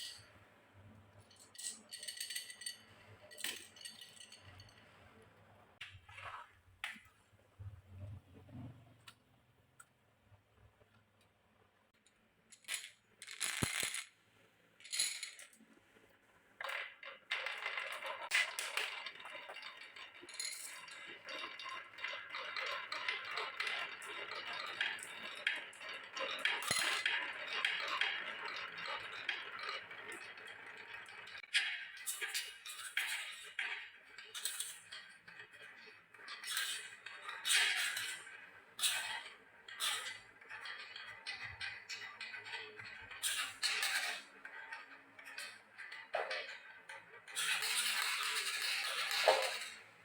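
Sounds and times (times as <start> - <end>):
glass marbles rolling and clicking: 0.0 - 0.2, 1.3 - 4.9, 12.5 - 14.2, 14.8 - 15.6, 16.6 - 49.9.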